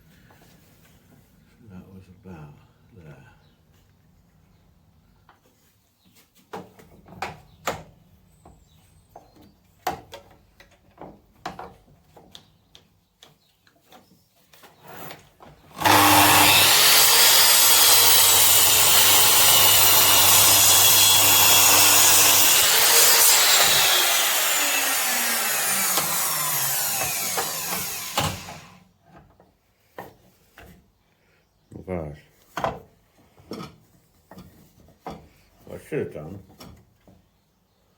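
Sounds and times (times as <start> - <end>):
electric power saw cutting: 14.9 - 28.8.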